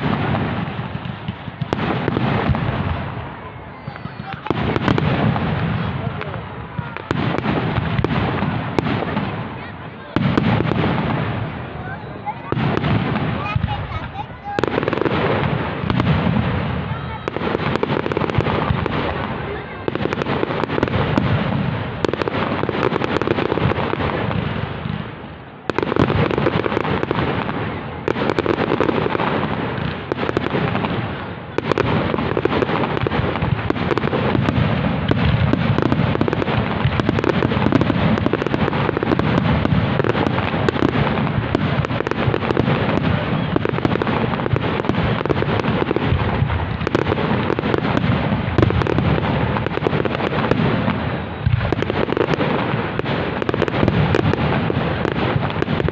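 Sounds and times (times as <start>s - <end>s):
fireworks banging and crackling: 0.0s - 55.9s.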